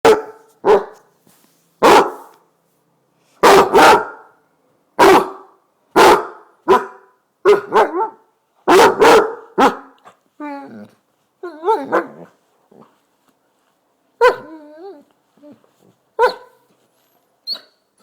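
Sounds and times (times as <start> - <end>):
dog barking loudly: 0.0 - 1.0, 1.8 - 2.3, 3.4 - 4.4, 5.0 - 10.0, 11.7 - 12.3, 14.2 - 14.5, 16.2 - 16.6.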